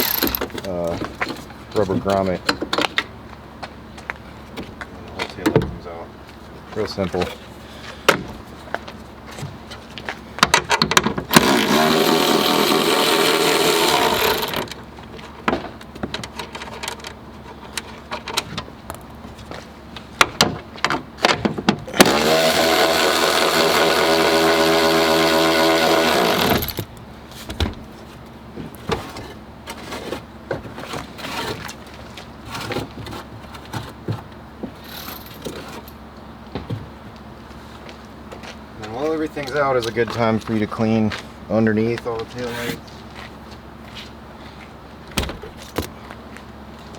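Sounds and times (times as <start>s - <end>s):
electric power tool spinning: 0.0s - 0.5s, 11.3s - 14.8s, 21.9s - 26.8s
parts clicking and knocking: 0.0s - 3.1s, 9.4s - 19.6s, 20.2s - 27.8s.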